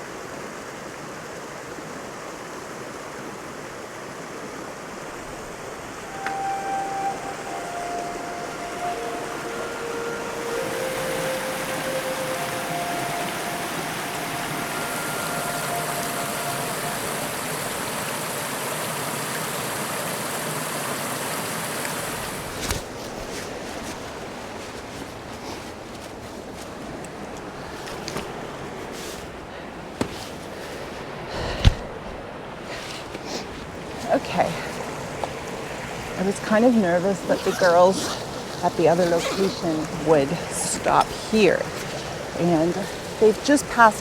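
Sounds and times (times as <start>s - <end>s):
small waterfall rushing: 0.0s - 44.0s
distant train horn: 5.8s - 18.4s, 36.2s - 44.0s.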